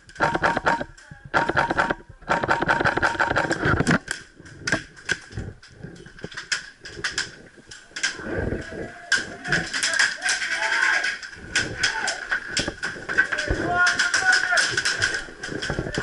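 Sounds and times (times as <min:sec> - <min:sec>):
airsoft rifle shots: 0:00.2 - 0:03.7.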